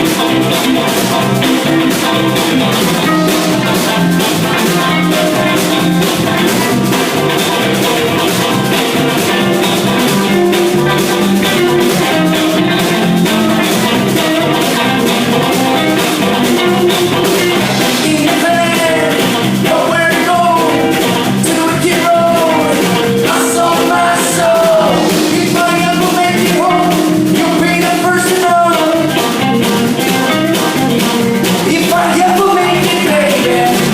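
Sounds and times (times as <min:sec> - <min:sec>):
rock band playing: 0:00.0 - 0:33.9
person singing: 0:15.7 - 0:29.4, 0:31.6 - 0:33.9.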